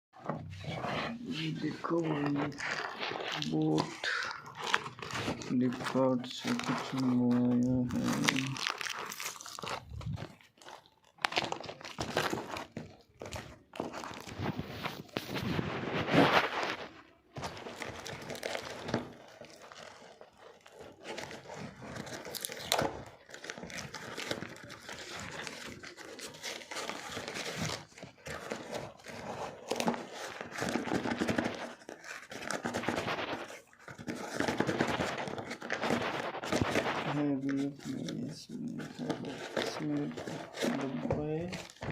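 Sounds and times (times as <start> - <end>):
packaging crinkling and tearing: 0.2 - 41.9.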